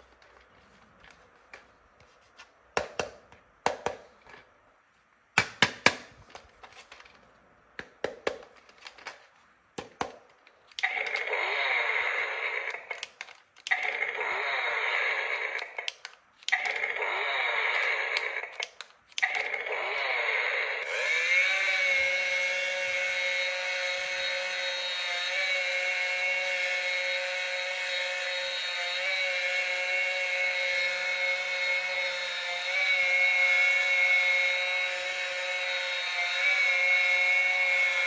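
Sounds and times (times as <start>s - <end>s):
toy power tool buzzing: 10.8s - 38.0s
plastic toy tools clicking: 12.4s - 14.3s, 15.3s - 19.7s.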